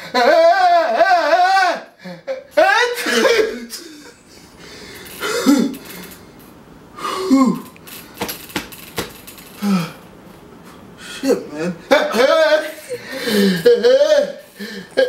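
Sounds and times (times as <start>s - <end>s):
person sneezing: 5.2s - 5.8s.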